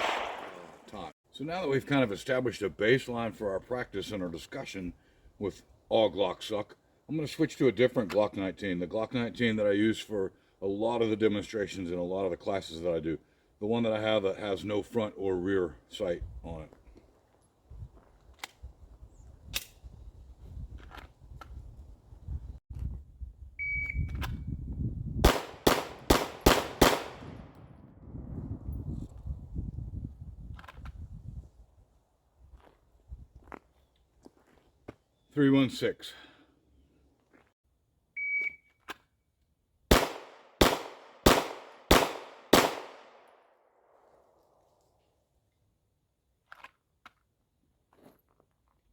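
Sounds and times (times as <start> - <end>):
pistol shots: 0.0 - 0.8, 25.2 - 27.4, 39.9 - 43.3
low wind rumble on microphone: 17.7 - 25.4, 27.2 - 33.5
shot timer beep: 23.6 - 24.1, 38.2 - 38.7.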